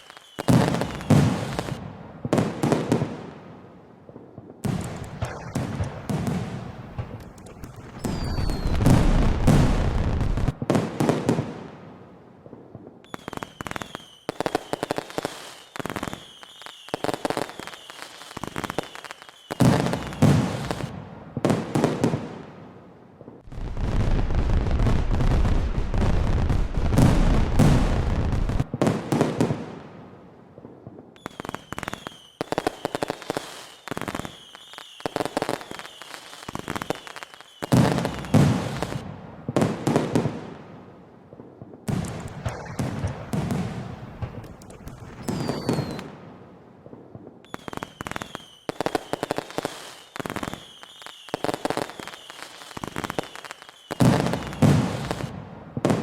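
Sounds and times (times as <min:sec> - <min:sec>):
high firework whistle: 0:00.0 - 0:01.8, 0:04.8 - 0:10.5, 0:13.0 - 0:20.9, 0:31.2 - 0:39.0, 0:42.1 - 0:46.1, 0:47.4 - 0:55.3
fireworks crackling and popping: 0:00.0 - 0:56.0
fireworks booming: 0:00.5 - 0:11.7, 0:23.4 - 0:30.0, 0:37.7 - 0:40.8, 0:41.4 - 0:48.4, 0:54.0 - 0:56.0.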